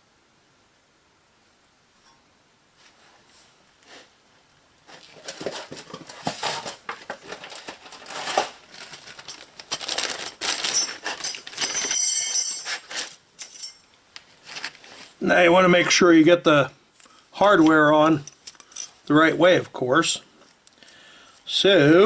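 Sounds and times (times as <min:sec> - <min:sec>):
rustling: 0:02.7 - 0:16.0
metal clips clinking: 0:07.3 - 0:14.0, 0:17.5 - 0:19.1.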